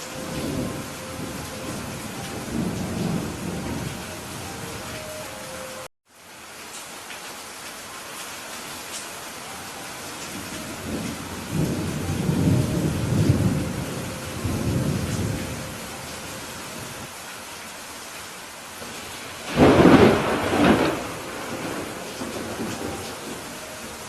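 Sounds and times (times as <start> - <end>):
rolling thunder rumble: 0.0 - 5.0, 10.3 - 17.1, 19.0 - 24.0
steady rain falling: 0.0 - 24.0
sharp thunderclap: 19.4 - 23.4.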